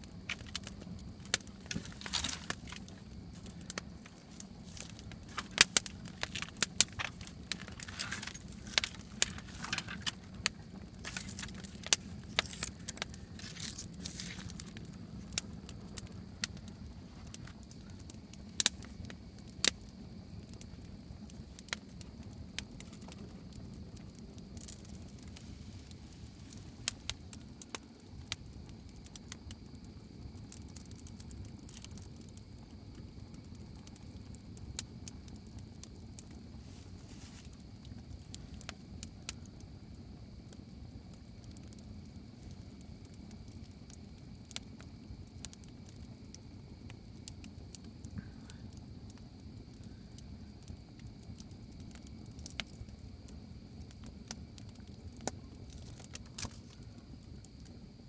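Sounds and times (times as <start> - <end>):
steady low rumble: 0.0 - 27.4
campfire crackling and popping: 0.0 - 58.0.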